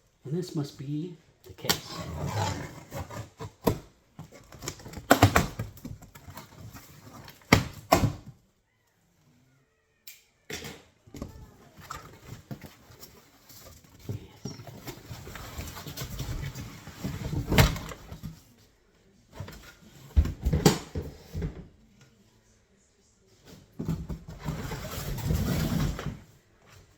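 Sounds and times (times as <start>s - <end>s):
cardboard rustling and scraping: 1.7s - 7.8s, 11.6s - 18.6s, 23.6s - 26.9s.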